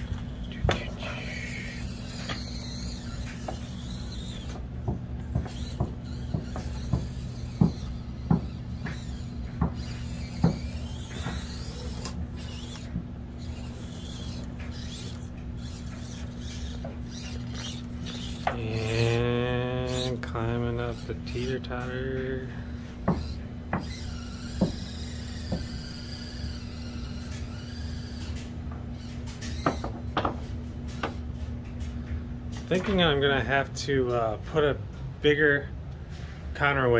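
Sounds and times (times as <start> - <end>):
toy truck motor hum: 0.0 - 30.0.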